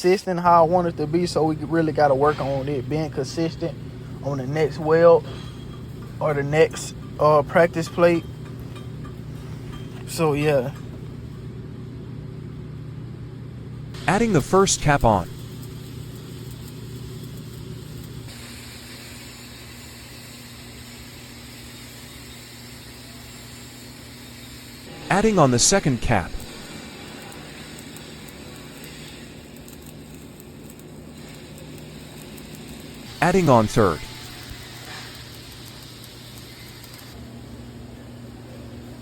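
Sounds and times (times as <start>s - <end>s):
welding arc crackling hiss: 14.0s - 37.3s.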